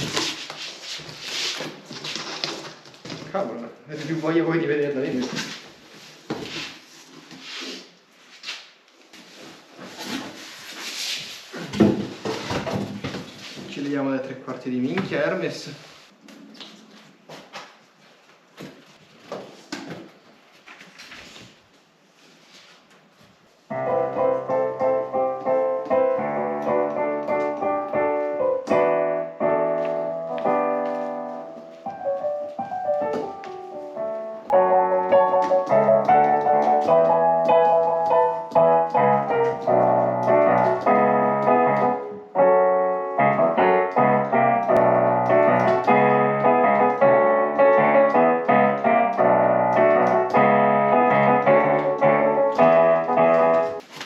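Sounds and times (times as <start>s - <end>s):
piano playing chords and melody: 23.7s - 53.8s.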